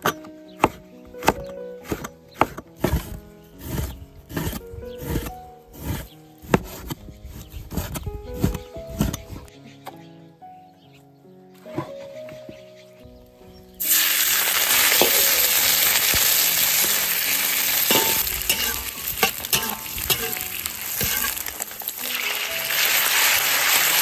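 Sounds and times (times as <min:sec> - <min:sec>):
spatula scraping a pan: 0:00.0 - 0:09.5, 0:13.8 - 0:24.0
meat sizzling in hot oil: 0:13.8 - 0:24.0.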